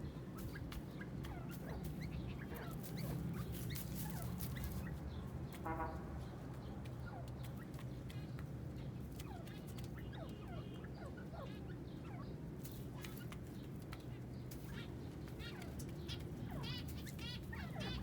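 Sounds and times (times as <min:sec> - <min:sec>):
francolins chirping: 0:13.9 - 0:18.0.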